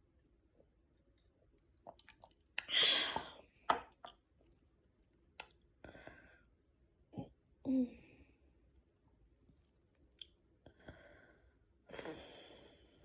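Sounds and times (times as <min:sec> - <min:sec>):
wet mouth clicks and smacks: 0:01.6 - 0:02.8, 0:05.4 - 0:05.6
person chewing food: 0:01.7 - 0:02.7.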